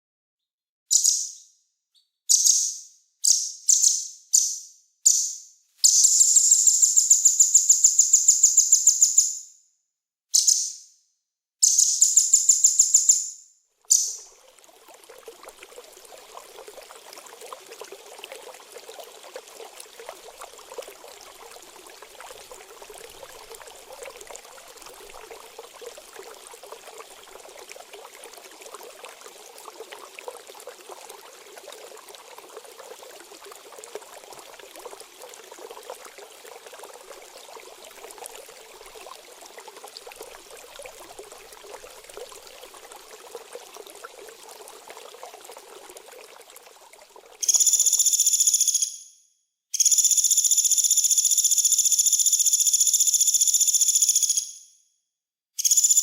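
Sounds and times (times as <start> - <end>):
songbird singing and trilling: 0.9 - 1.5, 2.3 - 9.3, 10.4 - 10.8, 11.6 - 13.3, 13.9 - 14.2
running water trickling: 13.8 - 48.2.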